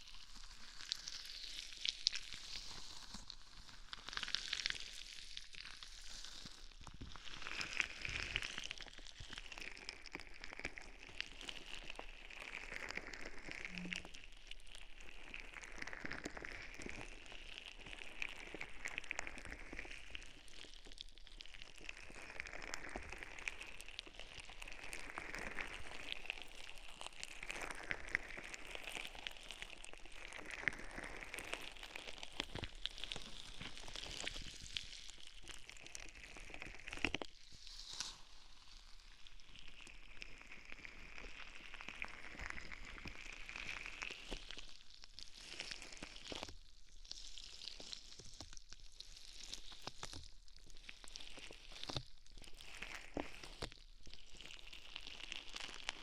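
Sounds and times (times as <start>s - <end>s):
crackly scratching at microphone: 11.8s - 14.5s.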